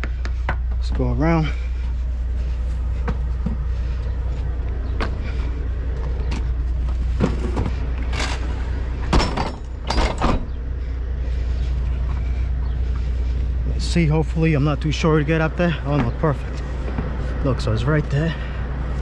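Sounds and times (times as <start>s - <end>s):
vehicle engine idling: 0.0s - 19.0s
knocks and clunks: 6.0s - 10.6s.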